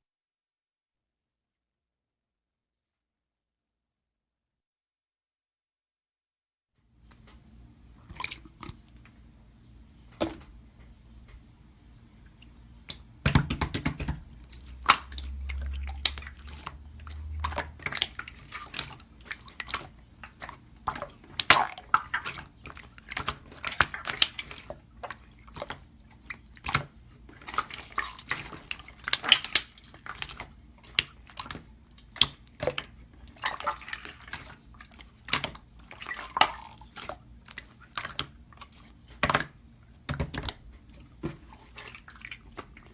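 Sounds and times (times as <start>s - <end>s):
slime squished by hand: 12.9s - 40.7s.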